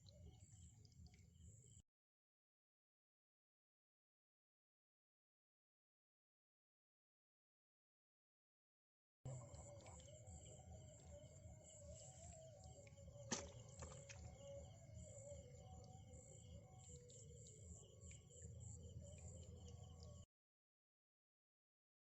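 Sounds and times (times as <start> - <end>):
birds chirping: 9.3 - 20.2
insects chirping: 9.3 - 20.2.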